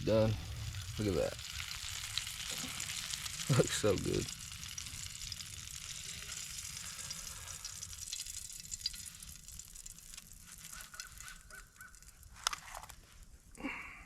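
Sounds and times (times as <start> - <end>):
fish sizzling in a frying pan: 0.0 - 12.9
short pitched calls: 10.7 - 12.2.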